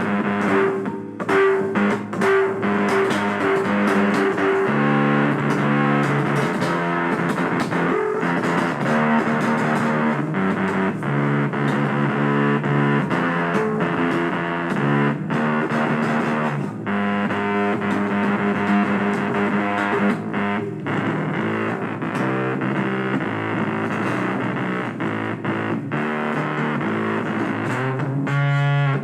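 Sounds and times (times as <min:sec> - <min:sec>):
distorted electric guitar music: 0:00.0 - 0:29.0.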